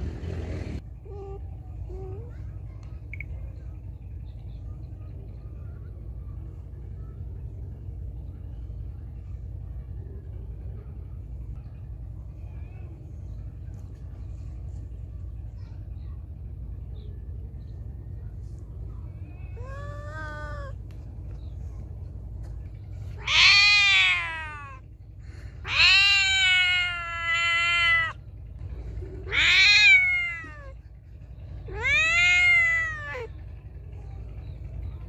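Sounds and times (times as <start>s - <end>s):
cat meowing loudly: 23.2s - 24.8s, 25.6s - 28.2s, 29.3s - 30.8s, 31.7s - 33.3s.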